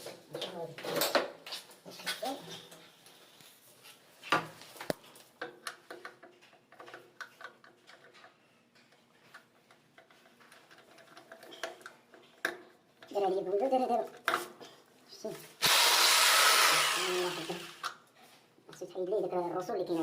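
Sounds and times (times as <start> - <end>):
tools and parts clicking: 5.4 - 13.2.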